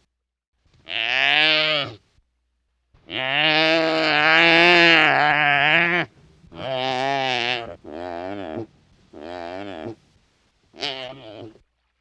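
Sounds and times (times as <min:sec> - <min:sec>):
wildebeest calling: 0:03.1 - 0:10.1, 0:10.8 - 0:11.6.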